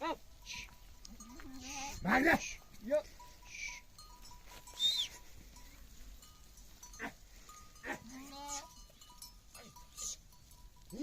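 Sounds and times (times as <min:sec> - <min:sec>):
goat bleating: 0:00.0 - 0:02.6, 0:07.8 - 0:10.3.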